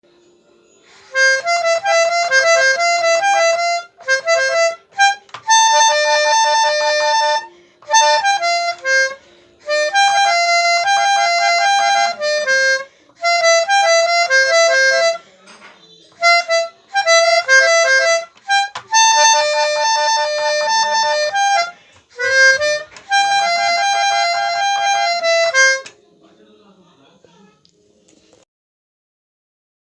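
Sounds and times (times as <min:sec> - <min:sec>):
bus horn playing a melody: 0:01.1 - 0:15.2, 0:16.2 - 0:25.9.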